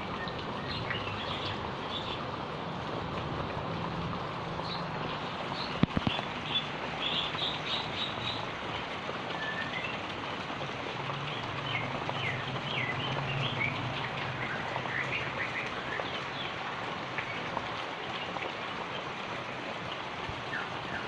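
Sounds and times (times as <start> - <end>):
heavy rain: 0.0 - 21.0
birds chirping: 0.1 - 2.3, 4.6 - 8.7.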